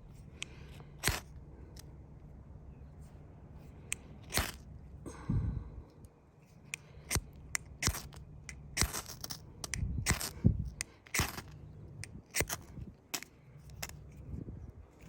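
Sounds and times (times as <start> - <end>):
striker scraping ferro rod: 4.2 - 4.6, 7.1 - 14.0.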